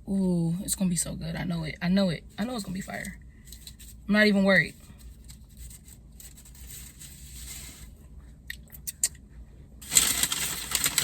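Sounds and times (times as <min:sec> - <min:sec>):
paper crinkling: 0:04.7 - 0:08.0, 0:09.8 - 0:11.0
packaging rustling: 0:05.0 - 0:07.9, 0:09.8 - 0:11.0.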